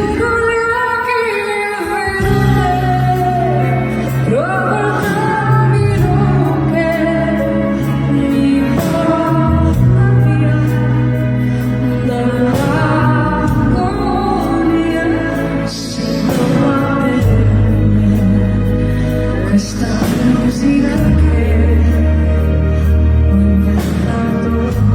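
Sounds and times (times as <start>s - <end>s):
band accompaniment: 0.0s - 24.9s
woman singing a ballad: 0.0s - 24.9s.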